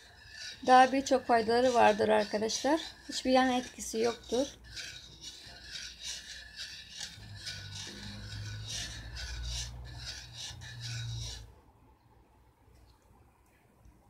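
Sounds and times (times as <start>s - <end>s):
spoon scraping a pan: 0.0s - 11.5s.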